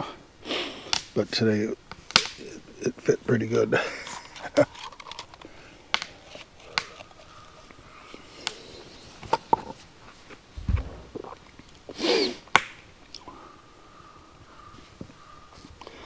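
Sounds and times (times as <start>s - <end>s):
low thump: 10.6s - 11.4s
wood fire crackling and popping: 10.6s - 11.6s.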